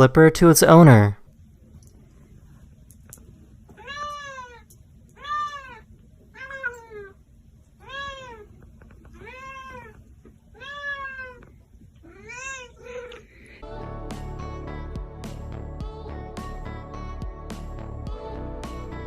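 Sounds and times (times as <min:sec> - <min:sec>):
cat meowing: 0:03.8 - 0:07.2, 0:07.8 - 0:13.6.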